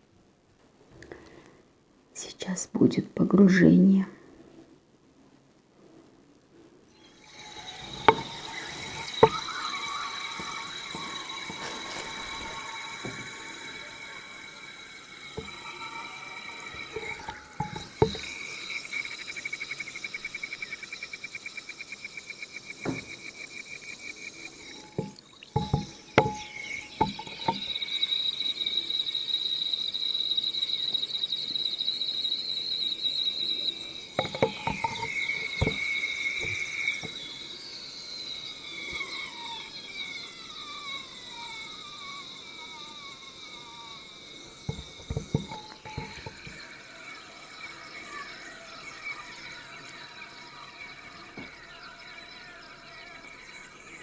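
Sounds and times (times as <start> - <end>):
air whistling from soaking clay: 6.9 - 54.0
falling squeals: 6.9 - 54.0
clicks and knocks: 24.7 - 27.8, 34.2 - 37.2, 44.6 - 46.6.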